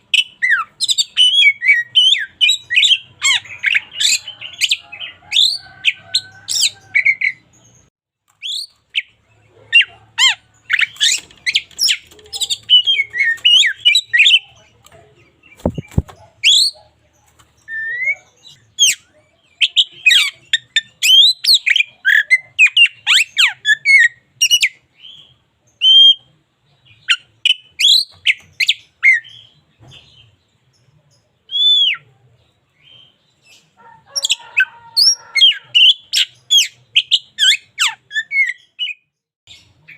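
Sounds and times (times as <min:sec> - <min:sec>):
bird singing whistles and trills: 0:27.0 - 0:29.5.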